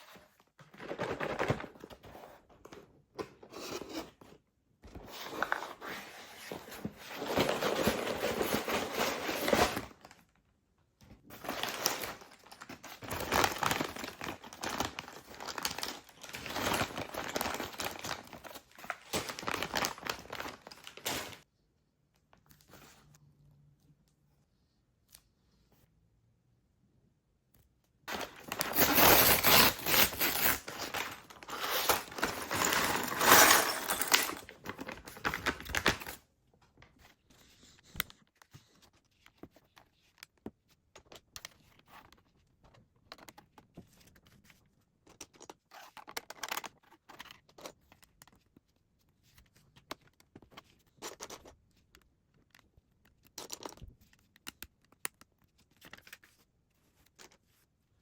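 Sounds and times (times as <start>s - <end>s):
plastic bags tearing and crinkling: 11.4s - 21.4s, 28.1s - 36.2s.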